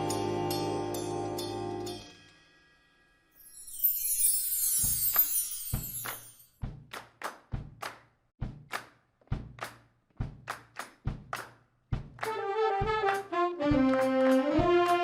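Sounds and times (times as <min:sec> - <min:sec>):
drum kit groove: 0:04.8 - 0:15.0
bass drum thumps: 0:06.6 - 0:06.9, 0:07.5 - 0:07.8, 0:08.4 - 0:08.7, 0:10.2 - 0:12.2
brass section chords: 0:12.2 - 0:15.0.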